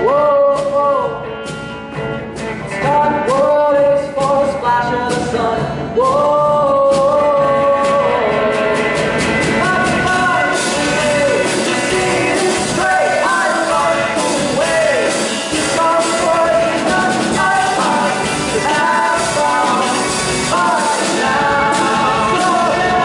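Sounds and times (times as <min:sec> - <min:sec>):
rock band playing: 0:00.0 - 0:23.0
sliding melody line: 0:06.0 - 0:23.0.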